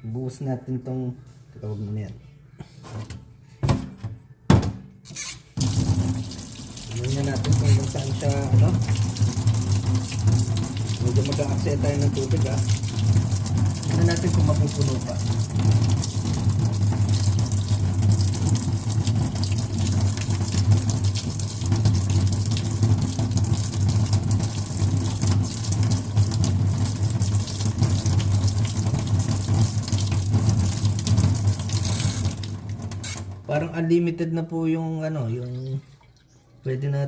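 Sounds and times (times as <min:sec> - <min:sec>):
water draining: 0:05.5 - 0:33.5, 0:35.3 - 0:36.4
tap water running into sink: 0:05.6 - 0:33.4.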